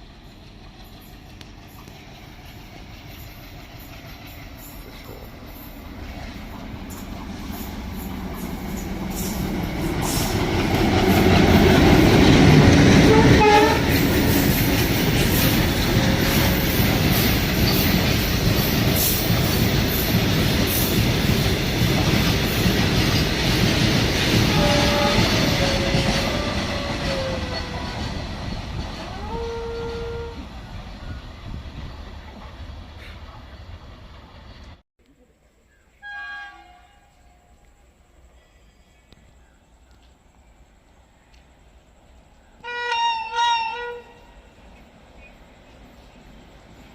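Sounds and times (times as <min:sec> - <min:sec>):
train wheels rumbling on rails: 0:00.0 - 0:34.8
train horn: 0:12.9 - 0:14.6, 0:24.4 - 0:28.1, 0:29.0 - 0:30.6, 0:36.0 - 0:37.6, 0:42.6 - 0:44.6.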